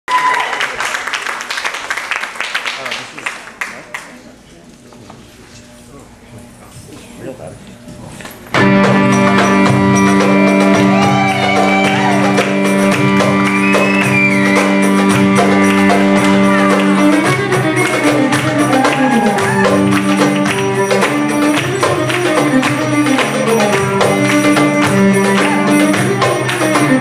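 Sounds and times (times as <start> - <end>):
hand percussion strokes: 7.9 - 27.0
electric violin melody: 8.6 - 27.0.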